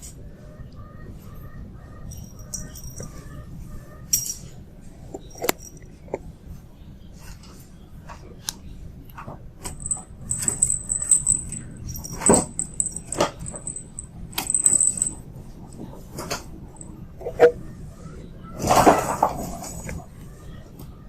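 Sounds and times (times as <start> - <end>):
small bell jingling: 2.1 - 3.2, 9.6 - 15.3.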